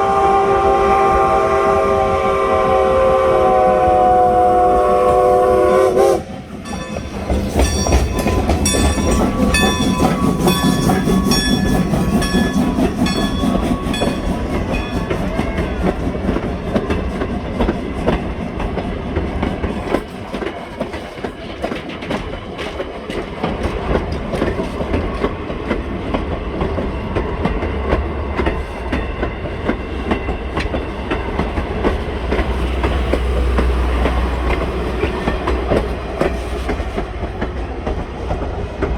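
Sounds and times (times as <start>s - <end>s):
train whistle chord: 0.0s - 6.3s
train low rumble: 0.0s - 38.9s
wheels clicking over rail joints: 6.5s - 38.9s.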